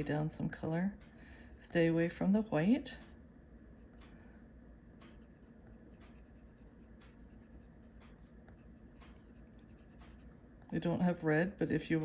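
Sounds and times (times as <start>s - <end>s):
pencil scratching on paper: 5.1s - 10.3s.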